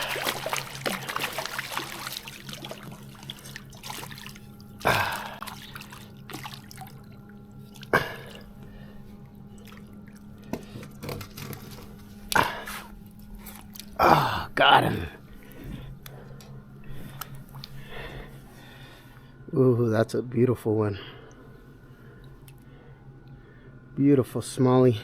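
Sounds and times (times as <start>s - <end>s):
water splashing and dripping: 0.0s - 10.8s, 17.4s - 17.9s
faint steady hum: 0.0s - 25.0s.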